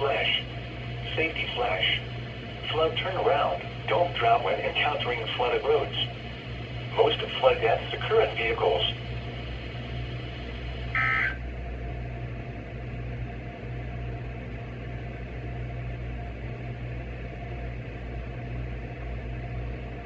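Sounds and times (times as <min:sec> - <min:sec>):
steady low hum: 0:00.0 - 0:20.0
harsh two-tone data burst warble: 0:10.9 - 0:11.4.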